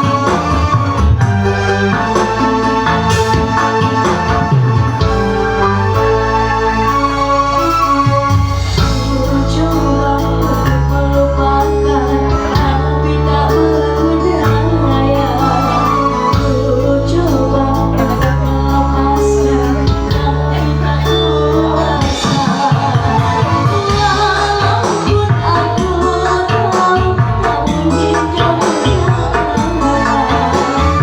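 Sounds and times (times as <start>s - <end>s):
bass line: 0.0s - 31.0s
electronic keyboard: 0.0s - 31.0s
person singing: 8.9s - 31.0s.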